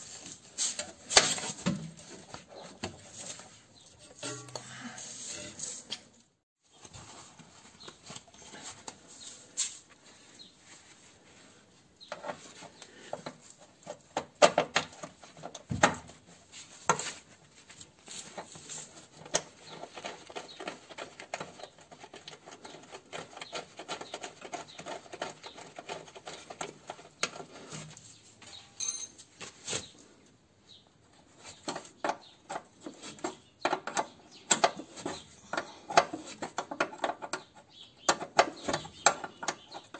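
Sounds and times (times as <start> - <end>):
scraping and rubbing: 0.0 - 14.1, 16.2 - 28.4
hand tools clicking and knocking: 0.7 - 4.8, 12.1 - 17.2, 31.5 - 39.9.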